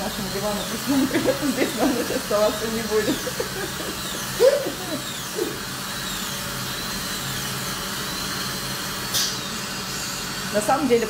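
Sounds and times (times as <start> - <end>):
dental drill whine: 0.0 - 11.0.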